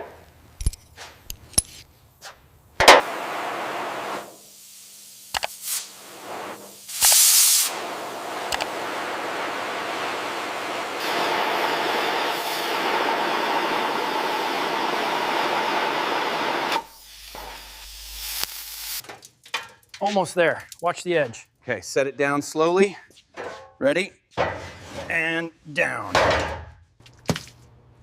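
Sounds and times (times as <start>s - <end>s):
loud burst of hissing: 3.0s - 19.0s
steady hissing rush: 3.0s - 19.0s.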